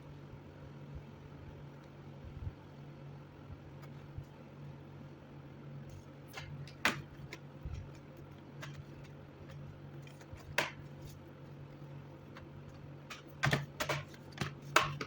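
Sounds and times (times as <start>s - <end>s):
steady low hum: 0.0s - 15.0s
laptop clicks and taps: 6.3s - 11.2s, 12.3s - 15.0s.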